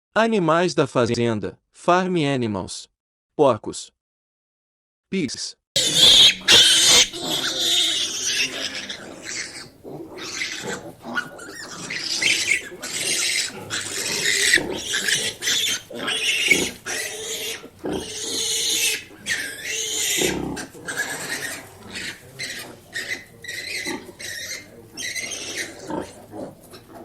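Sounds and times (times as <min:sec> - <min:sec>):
pigs squealing and grunting: 0:05.8 - 0:27.0.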